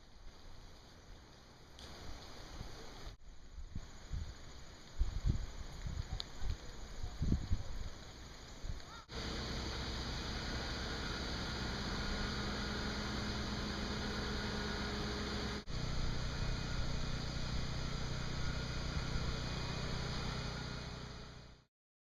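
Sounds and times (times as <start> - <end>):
constant hiss: 0.0 - 21.6
low hum: 8.0 - 21.7.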